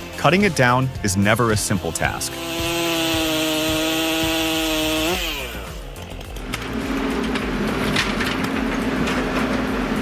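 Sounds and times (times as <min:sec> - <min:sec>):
chainsaw running: 0:00.0 - 0:10.0
low steady engine hum: 0:05.3 - 0:10.0.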